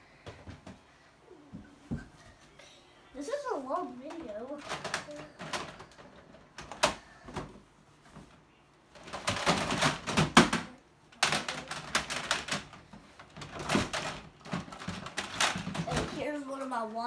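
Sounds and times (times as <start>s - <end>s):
rapid rattling and knocking: 3.8s - 7.6s, 8.9s - 16.4s.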